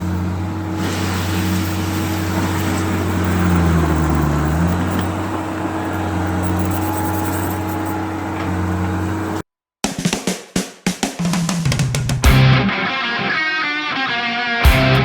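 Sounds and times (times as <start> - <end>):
engine humming: 0.0 - 9.4.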